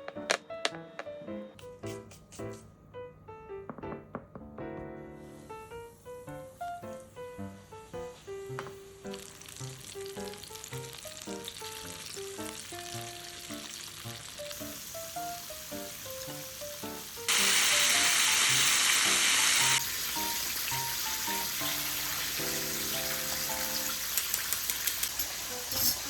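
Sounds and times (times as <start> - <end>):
background music: 0.0 - 24.2
chicken sizzling in hot oil: 8.9 - 26.0.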